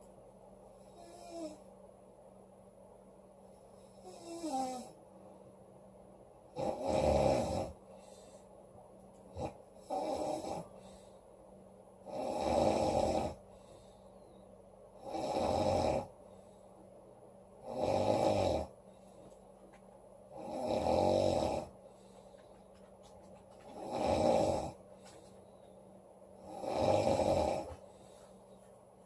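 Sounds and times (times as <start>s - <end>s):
quiet breathing: 0.0s - 1.8s, 3.4s - 5.6s, 6.7s - 29.0s
woman snoring loudly: 4.0s - 5.0s, 6.6s - 7.8s, 9.4s - 10.7s, 12.0s - 13.4s, 15.0s - 16.1s, 17.6s - 18.7s, 20.3s - 21.7s, 23.8s - 24.8s, 26.4s - 27.8s.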